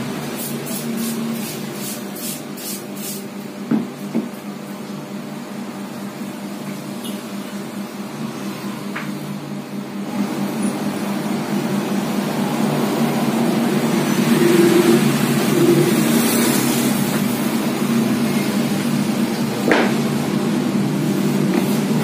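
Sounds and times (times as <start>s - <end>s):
vehicle engine running: 6.9s - 22.0s.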